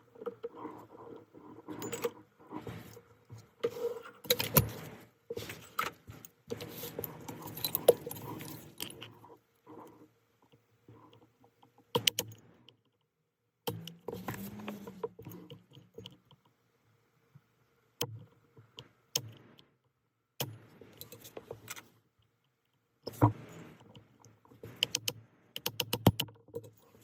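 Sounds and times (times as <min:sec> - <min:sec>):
metal parts and tools clinking: 0:01.6 - 0:02.6, 0:05.6 - 0:09.1.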